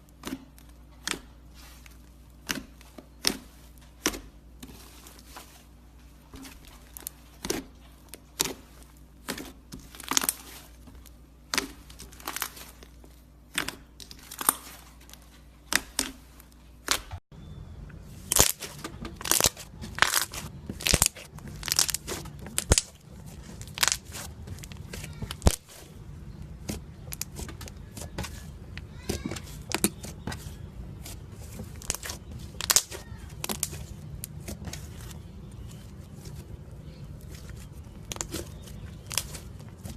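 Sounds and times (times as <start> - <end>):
steady low hum: 0.0 - 39.9
slime popping and crackling: 6.6 - 16.2, 18.3 - 25.8, 31.0 - 36.4, 37.1 - 39.9.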